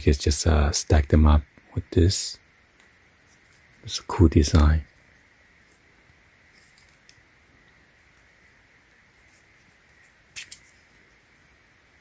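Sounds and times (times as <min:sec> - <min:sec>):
faint steady hiss: 0:00.0 - 0:12.0
small plastic parts clicking: 0:10.3 - 0:10.8.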